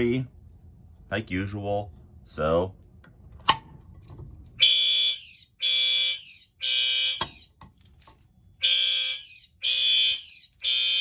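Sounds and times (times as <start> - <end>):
fire alarm horn blasts: 4.6 - 7.5, 8.6 - 11.0.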